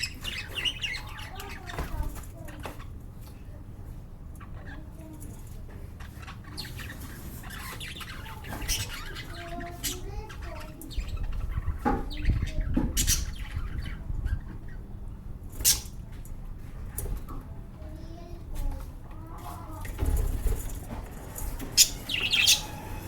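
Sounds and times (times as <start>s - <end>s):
lovebirds squawking and chirping: 0.0s - 3.0s, 4.4s - 16.1s, 19.8s - 23.0s.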